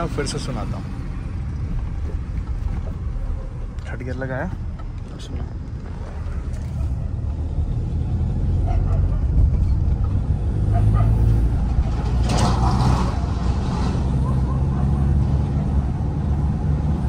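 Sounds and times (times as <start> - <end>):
diesel engine accelerating: 6.8 - 17.0.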